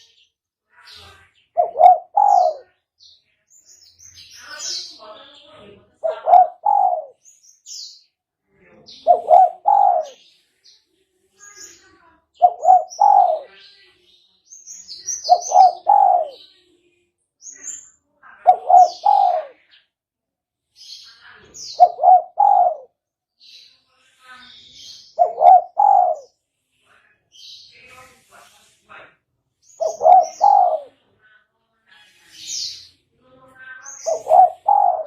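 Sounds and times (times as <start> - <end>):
small birds chirping: 0.0 - 35.0
dove cooing: 1.6 - 2.6, 6.0 - 7.2, 9.0 - 10.2, 12.4 - 13.5, 15.3 - 16.4, 18.5 - 19.6, 21.8 - 22.9, 25.2 - 26.3, 29.8 - 31.0, 34.1 - 35.0.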